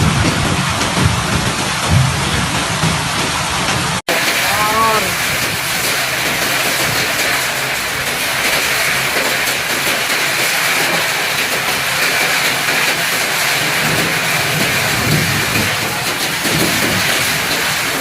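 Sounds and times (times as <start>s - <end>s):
low rumble of wind: 0.0s - 9.0s, 13.0s - 18.0s
heavy rain hiss: 0.0s - 18.0s.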